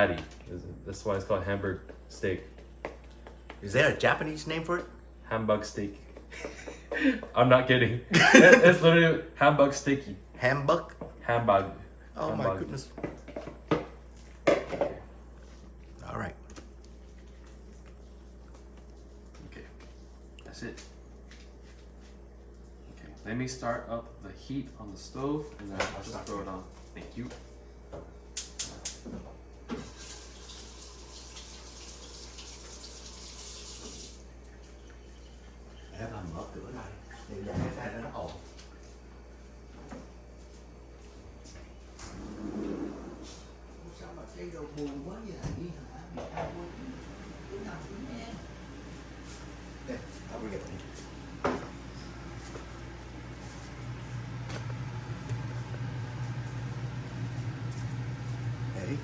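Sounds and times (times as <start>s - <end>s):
low motor hum: 46.4s - 59.0s.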